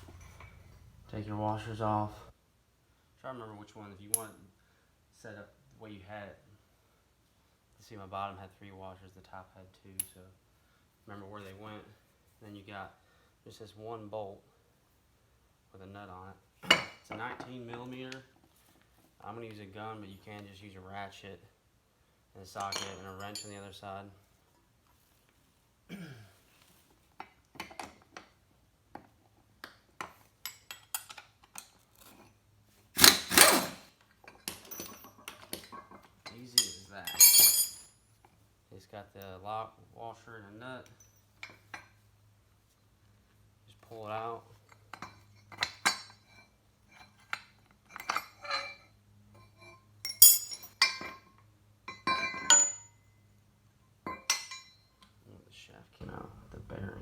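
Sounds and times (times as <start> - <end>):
metal tools clinking: 0.0 - 0.8, 22.5 - 23.8, 30.4 - 32.4, 33.0 - 38.0, 44.5 - 53.1, 54.0 - 55.1
metal mower parts clanking: 22.6 - 23.6, 33.0 - 37.9.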